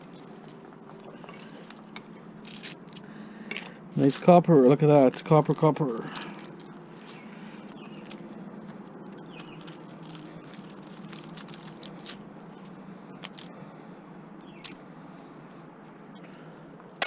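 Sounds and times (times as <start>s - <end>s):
scratchy rustles of wire: 0.0s - 3.1s, 4.0s - 13.6s
steady low hum: 0.0s - 17.0s
metal parts clicking: 9.3s - 13.5s.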